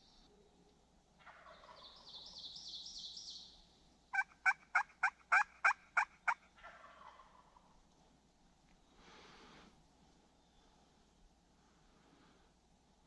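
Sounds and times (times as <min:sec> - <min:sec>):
turkey yelping: 0:01.2 - 0:01.8, 0:04.1 - 0:07.6
turkey warbling call: 0:01.2 - 0:02.0, 0:04.1 - 0:07.6.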